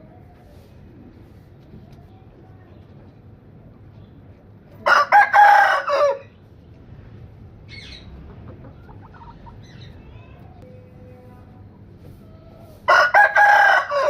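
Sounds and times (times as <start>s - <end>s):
rooster crowing: 4.8s - 6.3s, 12.9s - 14.0s.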